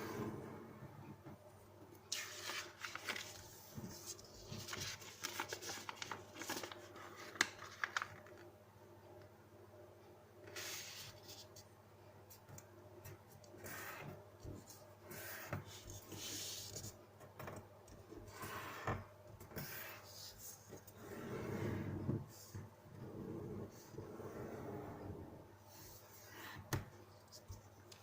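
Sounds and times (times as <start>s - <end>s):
paper being folded and creased: 2.1s - 8.5s.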